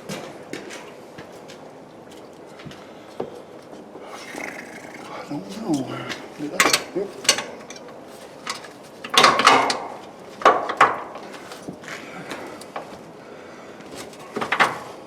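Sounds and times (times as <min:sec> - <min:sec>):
metal parts and tools clanking: 0:05.7 - 0:11.0.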